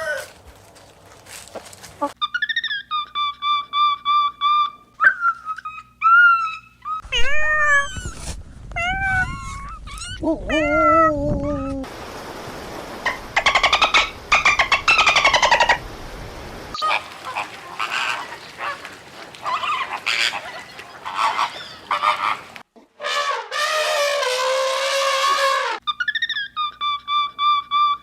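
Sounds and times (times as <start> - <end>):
animal calls: 16.8 - 28.0.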